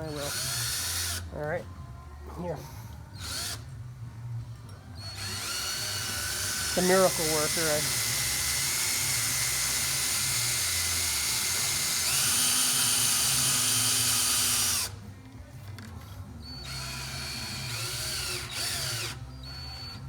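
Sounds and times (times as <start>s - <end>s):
drill running: 0.0s - 1.3s, 5.0s - 15.0s, 16.6s - 20.0s.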